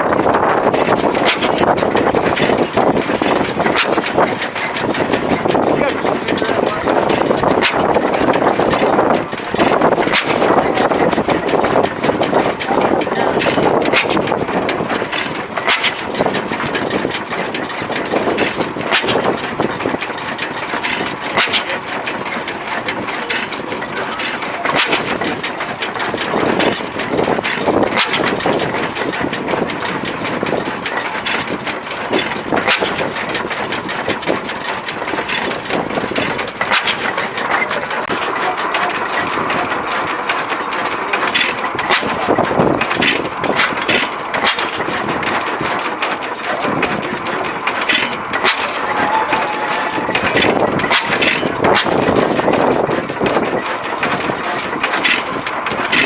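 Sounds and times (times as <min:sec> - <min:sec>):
machinery engines rumbling: 0:00.0 - 0:56.0.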